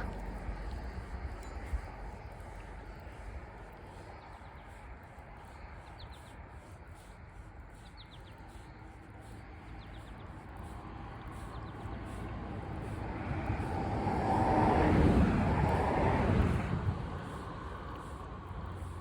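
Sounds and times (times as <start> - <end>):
low hum of road traffic: 0.0 - 19.0
small bird chirping: 7.8 - 8.4, 9.8 - 10.3.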